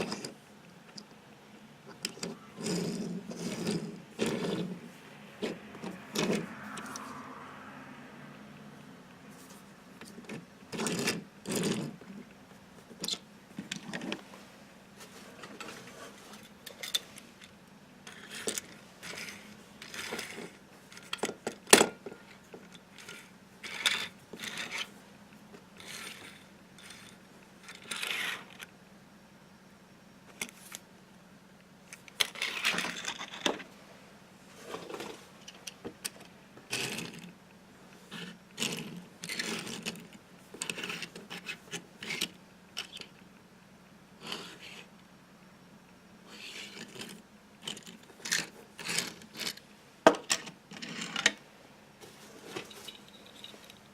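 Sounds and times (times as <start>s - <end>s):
toy cars and packaging handled: 15.0s - 25.0s, 25.6s - 28.7s, 31.9s - 33.7s, 34.6s - 43.2s, 46.3s - 49.6s, 52.0s - 53.9s.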